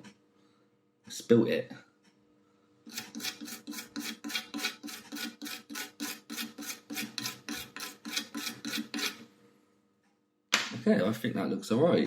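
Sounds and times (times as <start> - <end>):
brush scrubbing circuit board: 2.9 - 9.2.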